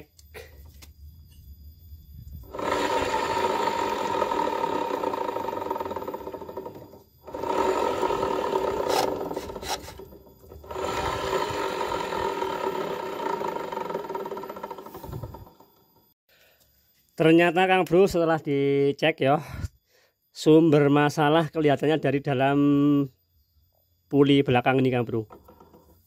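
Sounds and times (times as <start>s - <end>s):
rough grinding of scooter pulley: 2.3s - 15.8s, 25.2s - 26.0s.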